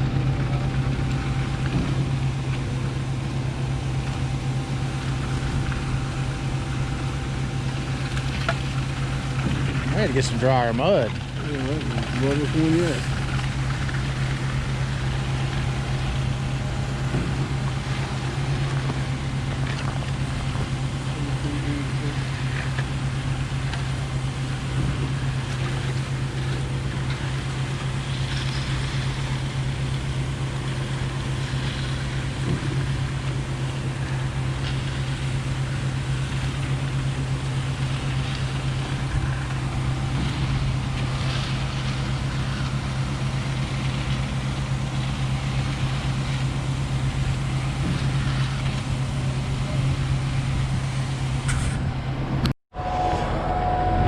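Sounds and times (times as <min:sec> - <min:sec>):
diesel engine humming: 0:00.0 - 0:54.0.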